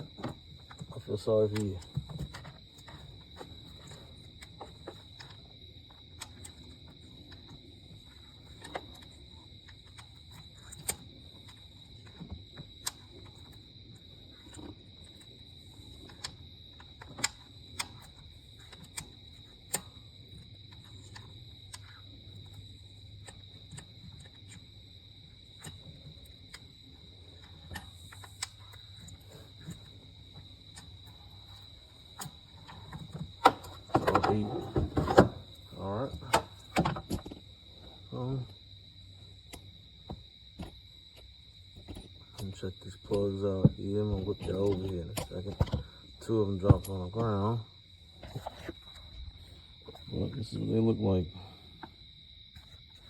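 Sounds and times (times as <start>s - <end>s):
light clicks and taps of tools: 0.7s - 3.1s.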